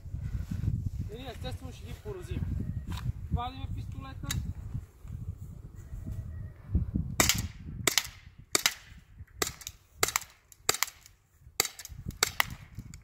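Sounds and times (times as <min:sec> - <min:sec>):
air pistol shots: 0:07.2 - 0:12.7.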